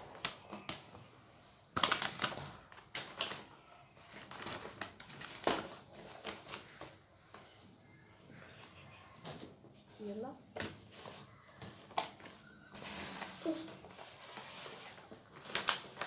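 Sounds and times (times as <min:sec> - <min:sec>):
plastic bag crinkling: 0:01.6 - 0:07.6, 0:10.6 - 0:16.0.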